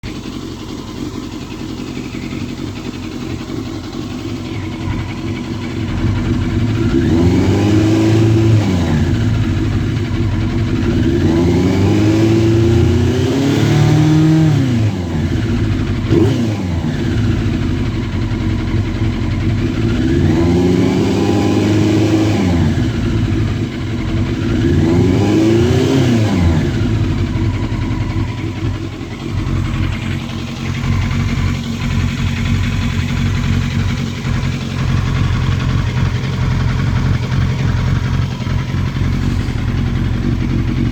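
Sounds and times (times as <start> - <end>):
motorcycle engine idling: 0.0 - 40.9
motorcycle engine revving: 0.0 - 40.9.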